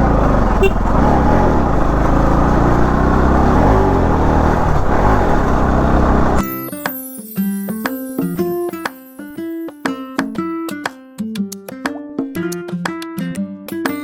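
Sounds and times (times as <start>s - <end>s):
motorcycle engine running: 0.0s - 6.4s
wind and road rush: 0.0s - 6.4s.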